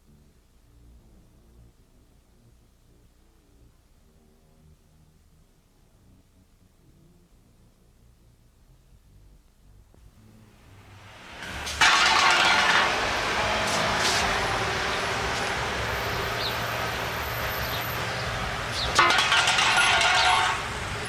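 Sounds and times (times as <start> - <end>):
rumble of vehicles: 10.6 - 21.0.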